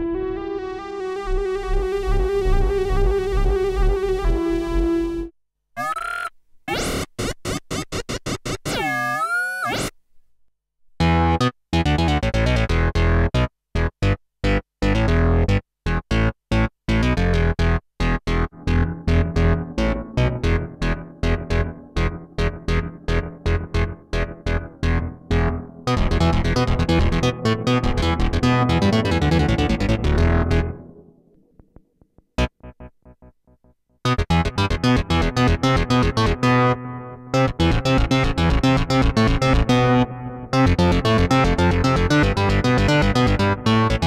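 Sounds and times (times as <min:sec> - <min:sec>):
analog synthesizer notes: 0:00.0 - 0:05.3, 0:18.3 - 0:31.0.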